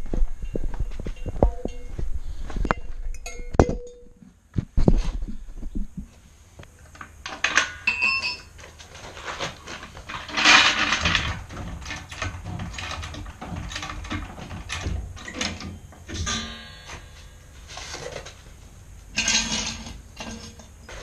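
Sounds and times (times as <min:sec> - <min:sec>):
ringing metal strikes: 0:02.7 - 0:04.3, 0:15.7 - 0:17.8
metal tools clinking and scraping: 0:07.3 - 0:18.5, 0:19.1 - 0:21.0
scraping metal clatter: 0:07.3 - 0:18.5, 0:19.2 - 0:21.0.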